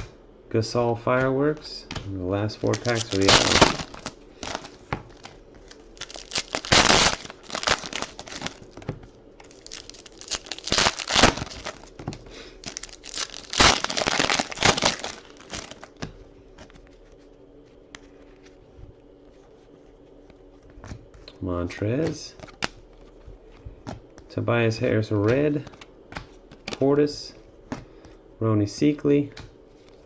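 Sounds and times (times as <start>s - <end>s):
faint handling of cards: 1.0s - 28.2s, 28.8s - 30.0s
card wrappers torn and crinkled: 2.6s - 8.8s, 9.4s - 16.0s.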